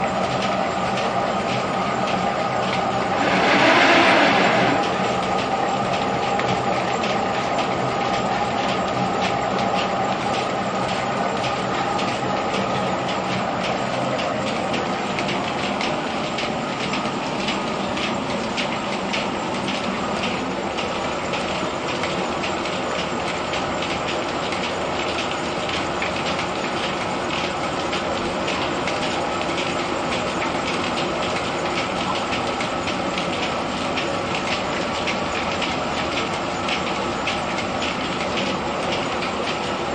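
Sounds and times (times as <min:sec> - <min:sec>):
threshing machine hum: 0:01.3 - 0:06.5.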